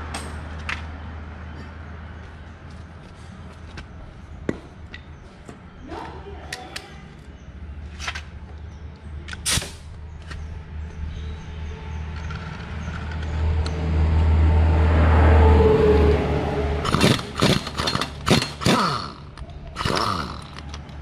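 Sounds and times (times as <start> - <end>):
metal parts and tools knocking: 16.9 - 19.2.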